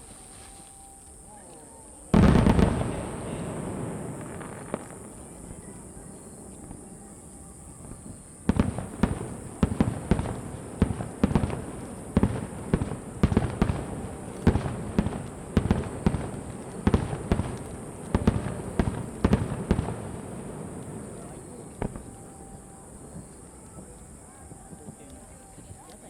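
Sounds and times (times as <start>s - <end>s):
fireworks bursting with echo: 0.0s - 26.0s.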